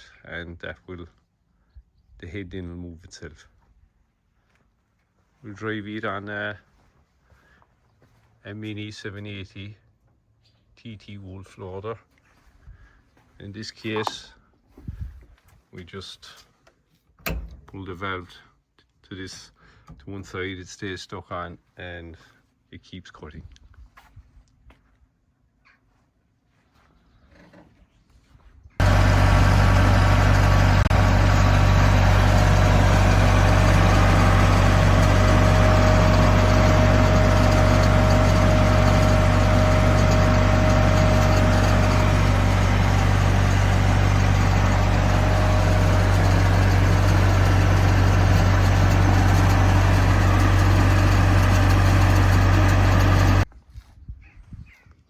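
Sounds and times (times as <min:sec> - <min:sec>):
faint hydraulic whine: 0:28.8 - 0:53.5
loader engine and flail mulcher drone: 0:28.8 - 0:53.5.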